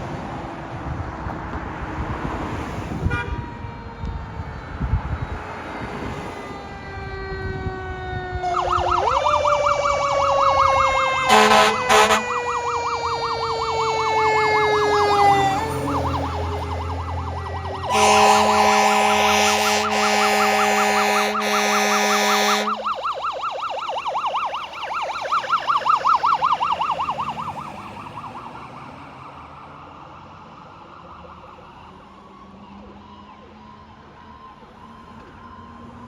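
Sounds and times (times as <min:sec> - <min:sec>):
engine and road noise: 0:00.0 - 0:36.0
horn blasts: 0:03.0 - 0:03.6, 0:11.2 - 0:12.4, 0:17.8 - 0:22.9
electronic yelp siren: 0:03.0 - 0:36.0
mechanical siren wail: 0:03.0 - 0:36.0.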